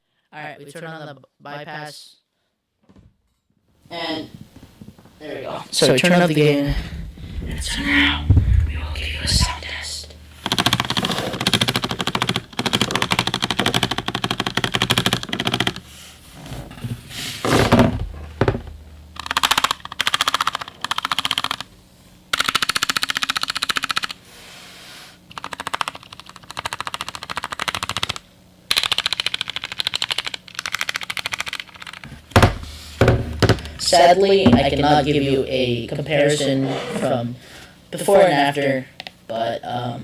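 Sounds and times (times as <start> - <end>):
mechanical keyboard typing: 10.4 - 15.8, 19.2 - 21.7, 22.4 - 24.2, 25.3 - 32.0.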